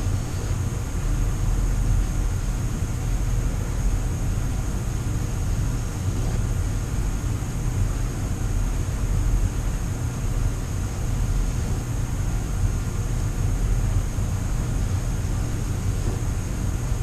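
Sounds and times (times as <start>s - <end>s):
low machine hum: 0.0s - 17.0s.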